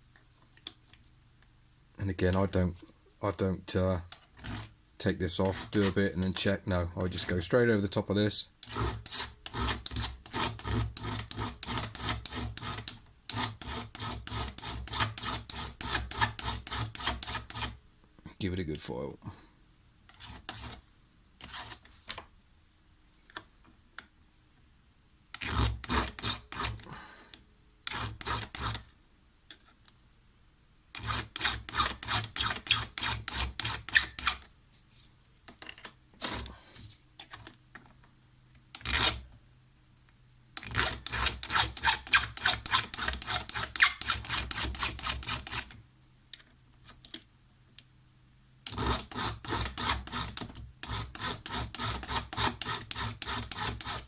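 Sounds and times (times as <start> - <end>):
file rasping on chainsaw chain: 4.4 - 4.7, 5.4 - 6.0, 8.6 - 17.8, 20.1 - 20.8, 21.4 - 21.8, 25.4 - 26.9, 27.9 - 28.8, 31.0 - 34.4, 38.8 - 39.2, 40.6 - 45.8, 48.7 - 54.0.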